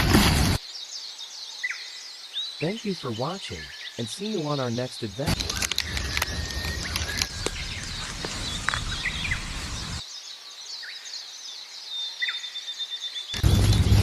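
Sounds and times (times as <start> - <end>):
birds chirping: 0.5 - 14.0
low rumble with clicks: 5.3 - 10.0, 13.4 - 14.0.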